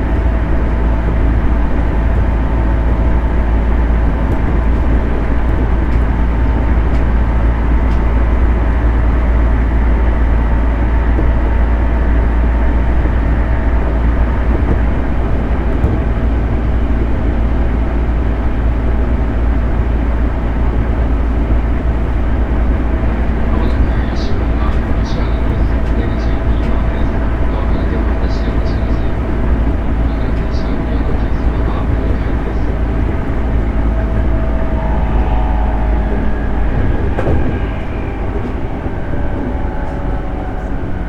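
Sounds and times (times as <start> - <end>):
train wheels rumbling on rail: 0.0 - 41.0
faint steady tones: 20.4 - 41.0.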